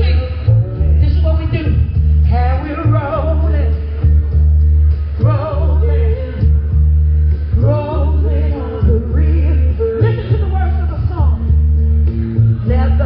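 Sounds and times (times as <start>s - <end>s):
soul band with heavy bass: 0.0s - 13.0s
person singing with vibrato: 5.2s - 6.8s, 7.4s - 11.6s.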